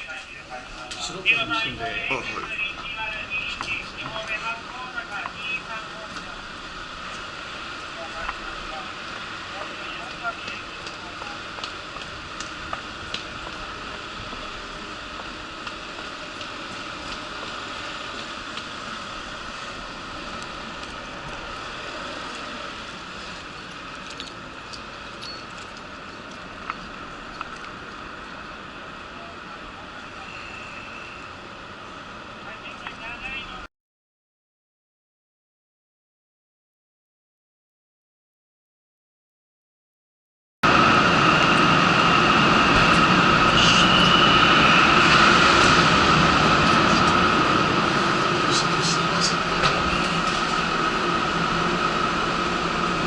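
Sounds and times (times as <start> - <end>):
machinery drone with high hum: 0.0 - 33.6, 40.6 - 53.0
mechanical drone with hum: 40.6 - 53.0.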